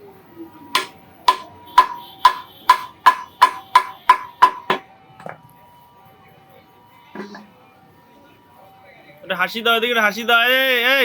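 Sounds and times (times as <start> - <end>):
hammer striking iron on anvil: 0.8 - 4.8.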